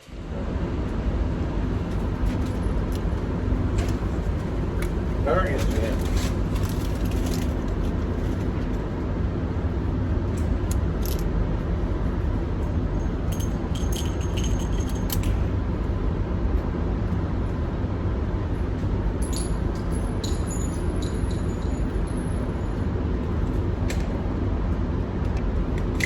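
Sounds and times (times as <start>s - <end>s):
steady low rumble: 0.0s - 26.0s
light metallic clicks and jingles: 13.0s - 15.4s, 19.2s - 22.4s.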